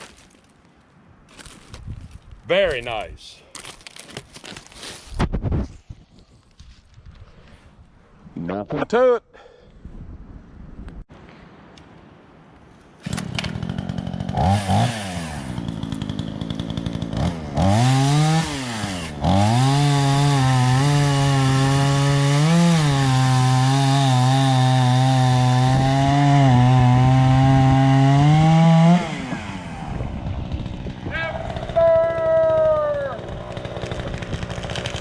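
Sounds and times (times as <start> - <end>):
chainsaw cutting wood: 13.0 - 35.0
chainsaw revving: 13.0 - 35.0.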